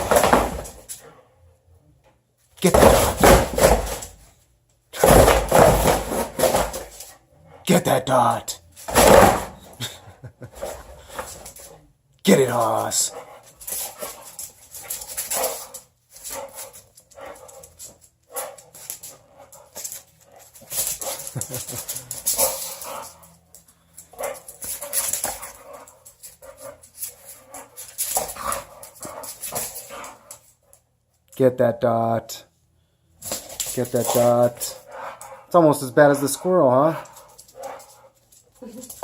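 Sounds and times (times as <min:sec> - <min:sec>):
dog scuffling and pouncing: 0:00.0 - 0:01.0, 0:02.7 - 0:04.3, 0:05.0 - 0:07.2, 0:08.8 - 0:09.7, 0:13.1 - 0:30.6, 0:33.2 - 0:35.5, 0:36.3 - 0:39.0.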